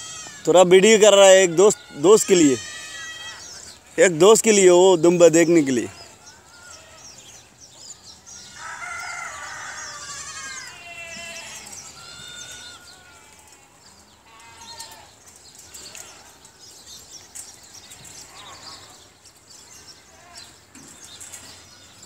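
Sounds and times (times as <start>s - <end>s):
sheep bleating: 0.0s - 7.2s, 9.7s - 16.4s.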